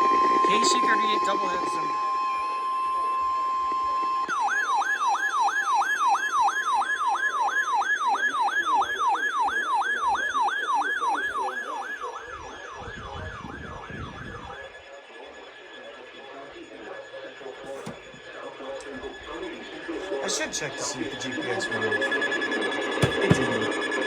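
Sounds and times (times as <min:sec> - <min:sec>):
weather radio alert tone: 0:00.0 - 0:02.0, 0:17.5 - 0:24.0
electronic siren alarm sweeps: 0:00.0 - 0:24.0.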